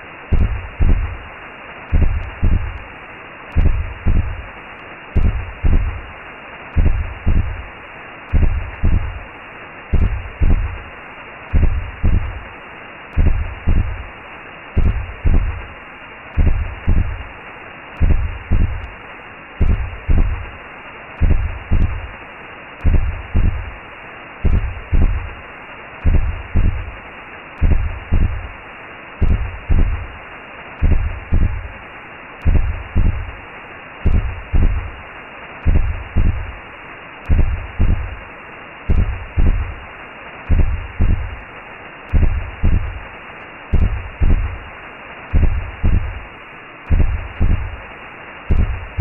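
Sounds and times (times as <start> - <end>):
steady whooshing hiss: 0.0 - 49.0
slow heartbeat: 0.3 - 1.3, 1.9 - 2.9, 3.5 - 4.5, 5.1 - 6.1, 6.7 - 7.7, 8.3 - 9.3, 9.9 - 10.9, 11.5 - 12.5, 13.1 - 14.1, 14.8 - 15.8, 16.4 - 17.3, 18.0 - 19.0, 19.6 - 20.6, 21.2 - 22.2, 22.8 - 23.8, 24.4 - 25.4, 26.0 - 27.0, 27.6 - 28.6, 29.2 - 30.2, 30.8 - 31.8, 32.4 - 33.4, 34.0 - 35.0, 35.6 - 36.6, 37.2 - 38.3, 38.9 - 39.9, 40.5 - 41.5, 42.1 - 43.1, 43.7 - 44.7, 45.3 - 46.3, 46.9 - 47.8, 48.5 - 49.0.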